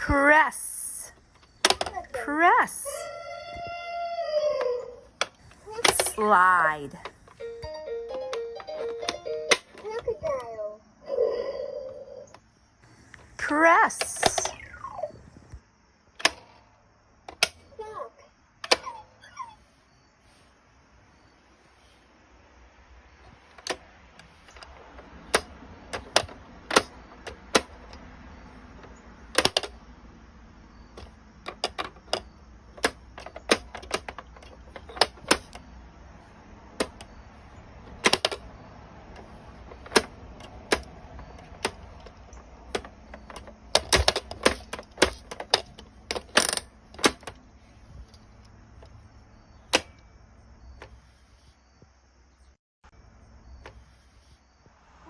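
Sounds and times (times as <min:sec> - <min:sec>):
toy clicking and tapping: 0:07.0 - 0:10.0.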